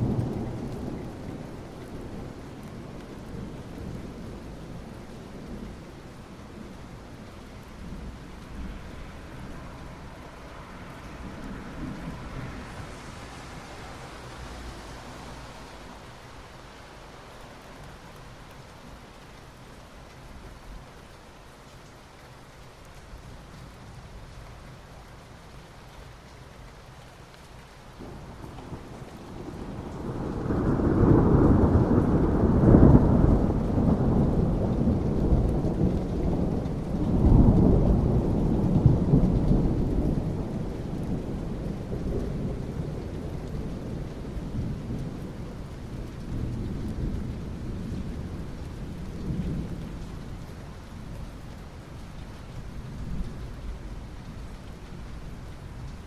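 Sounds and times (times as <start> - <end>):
rain on asphalt: 0.0 - 56.0
rolling thunder: 28.0 - 50.4.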